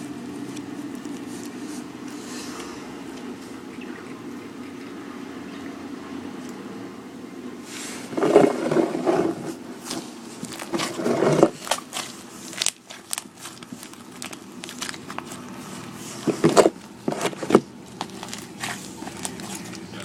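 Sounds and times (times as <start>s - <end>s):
slime squelching and clicking: 11.6s - 15.5s, 17.8s - 20.0s.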